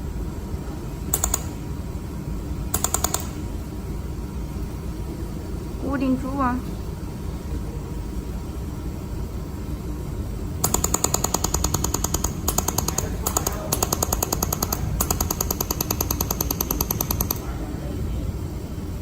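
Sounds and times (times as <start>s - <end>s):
low machine hum: 0.0s - 19.0s
laser welder clicking: 1.1s - 1.6s, 2.8s - 3.4s, 10.6s - 17.4s.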